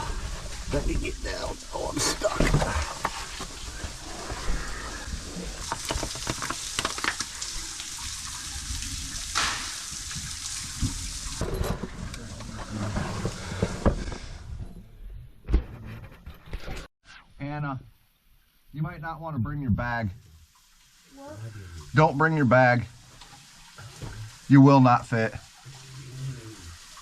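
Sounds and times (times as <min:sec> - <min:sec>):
steady rushing hiss: 0:00.0 - 0:08.0, 0:17.4 - 0:27.0.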